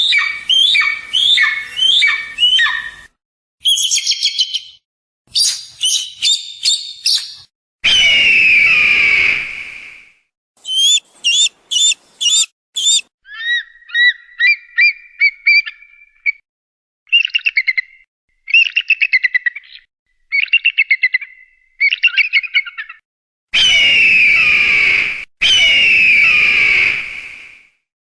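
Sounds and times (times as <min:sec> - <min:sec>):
eagle calling: 0:00.0 - 0:04.7, 0:10.6 - 0:16.3.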